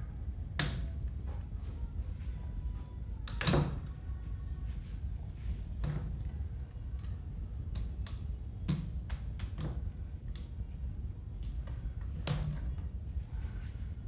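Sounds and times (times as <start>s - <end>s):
steady low rumble: 0.0s - 14.0s
fan parts clicking and knocking: 3.2s - 4.3s, 5.2s - 13.8s.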